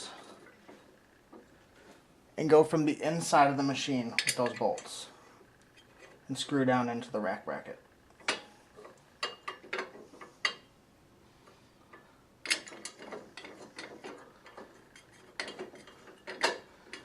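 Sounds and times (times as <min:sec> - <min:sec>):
small metal clicks of bolts: 0:11.9 - 0:17.0.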